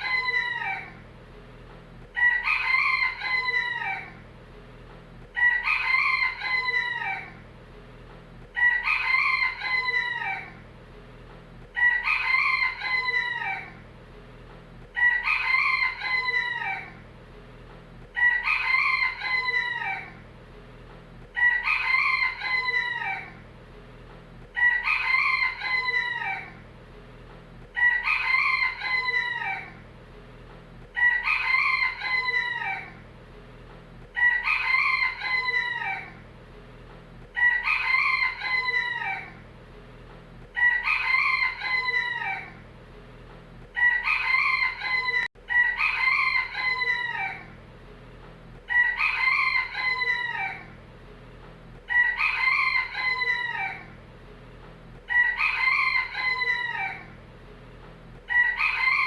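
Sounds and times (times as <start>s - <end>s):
rooster crowing: 0.0s - 1.0s, 2.0s - 4.2s, 5.2s - 7.4s, 8.4s - 10.6s, 11.6s - 13.8s, 15.0s - 17.0s, 18.0s - 20.2s, 21.2s - 23.4s, 24.5s - 26.6s, 27.6s - 29.8s, 30.8s - 33.0s, 34.0s - 36.2s, 37.3s - 39.4s, 40.5s - 42.6s, 43.7s - 47.6s, 48.6s - 50.8s, 51.8s - 54.0s, 55.0s - 57.2s, 58.2s - 59.0s.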